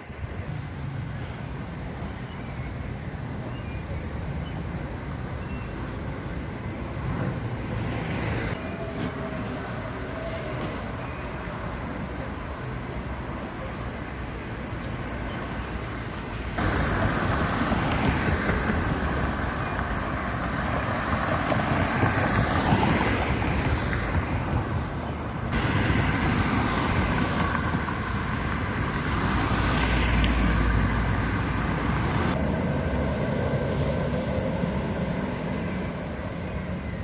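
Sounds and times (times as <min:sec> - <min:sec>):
vehicles passing: 0:00.0 - 0:37.0.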